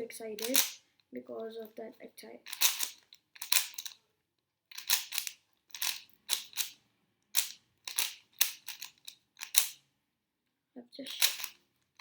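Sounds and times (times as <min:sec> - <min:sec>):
puzzle cube plastic clicks: 0:00.3 - 0:00.8, 0:02.4 - 0:04.0, 0:04.7 - 0:09.8, 0:11.1 - 0:12.0.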